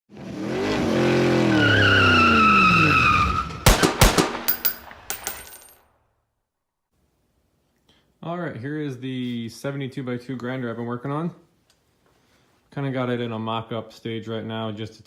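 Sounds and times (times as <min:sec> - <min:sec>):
engine-like sound with high squeal: 0:00.1 - 0:03.6
sharp bangs like gunshots: 0:03.6 - 0:05.5.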